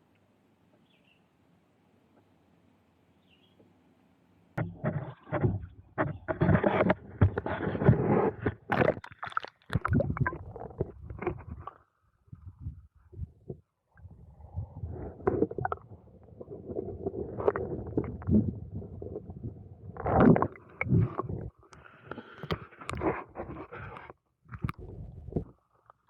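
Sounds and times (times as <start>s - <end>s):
kayak knocks and scraping: 4.6s - 9.1s
water sloshing: 8.5s - 11.8s.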